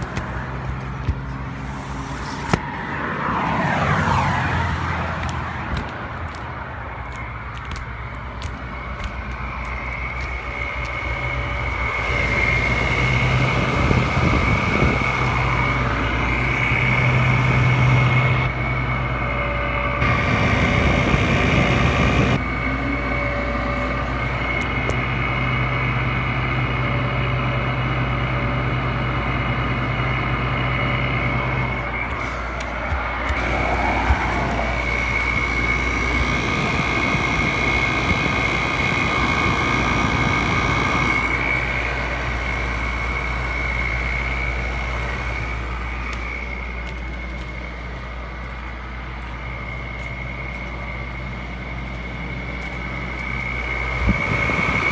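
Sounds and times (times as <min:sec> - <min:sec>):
low hum: 0:00.0 - 0:54.9
air conditioner humming and whining: 0:08.0 - 0:47.5.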